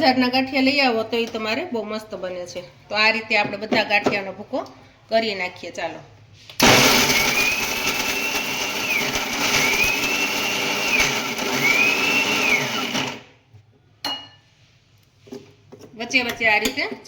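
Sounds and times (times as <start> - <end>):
mixer grinder motor whine: 6.6 - 13.3.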